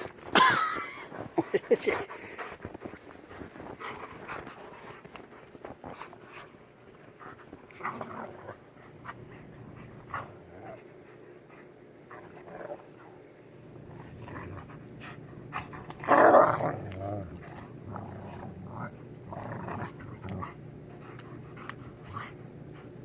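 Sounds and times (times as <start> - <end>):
dogs scuffling: 0.0 - 10.8
dogs panting: 0.0 - 16.1, 17.2 - 23.0.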